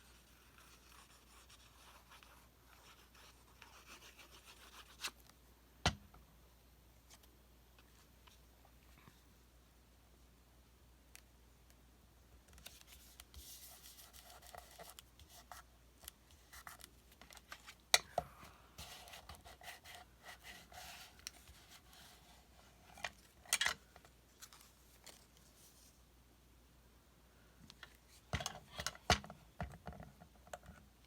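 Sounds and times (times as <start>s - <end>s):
paper rustling: 18.8s - 26.0s.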